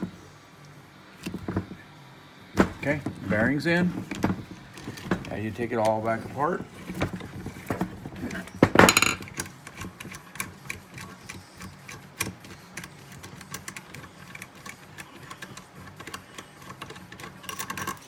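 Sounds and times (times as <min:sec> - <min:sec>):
small metal parts clattering: 0:04.0 - 0:10.2, 0:12.8 - 0:18.0.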